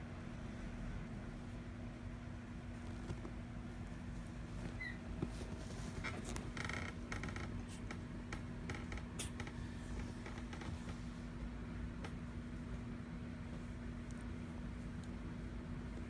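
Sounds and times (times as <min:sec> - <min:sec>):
steady low hum: 0:00.0 - 0:16.0
kittens scratching: 0:02.7 - 0:16.0.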